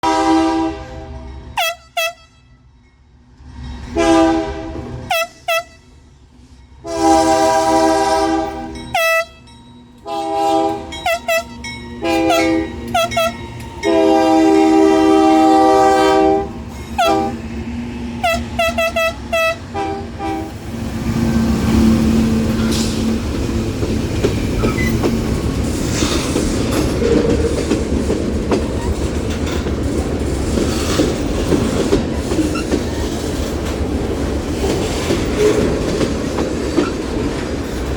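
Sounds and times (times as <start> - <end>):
locomotive air horn: 0.0 - 2.6, 4.0 - 6.0, 6.8 - 17.5, 18.2 - 20.6
train wheels rumbling on rails: 2.8 - 37.9.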